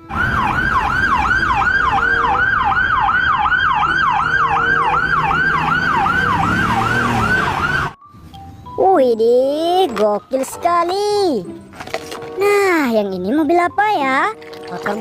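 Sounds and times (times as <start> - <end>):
police siren yelp: 0.0 - 8.0.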